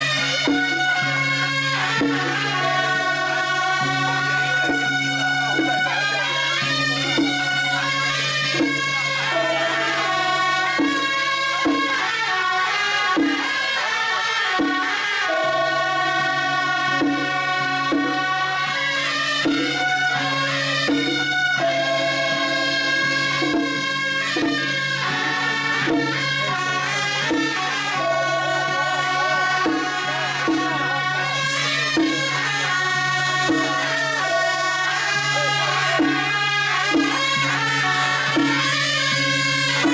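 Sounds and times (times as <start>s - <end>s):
reed horns playing melody: 0.0s - 39.9s
sharp percussion strikes: 0.0s - 39.9s.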